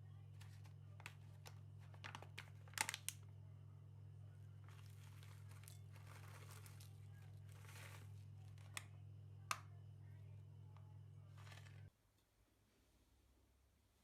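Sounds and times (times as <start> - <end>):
low steady hum: 0.0 - 14.0
soft rustling and handling: 0.3 - 3.2, 4.4 - 9.7, 10.7 - 11.9.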